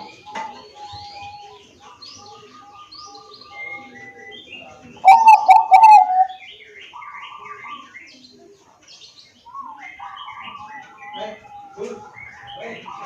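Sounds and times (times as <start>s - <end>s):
small birds chirping: 0.0s - 13.0s
dove cooing: 5.0s - 6.5s.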